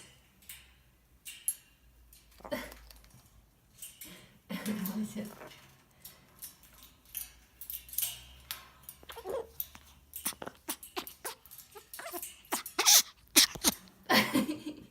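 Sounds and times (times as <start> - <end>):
parrot growling: 9.0 - 13.9.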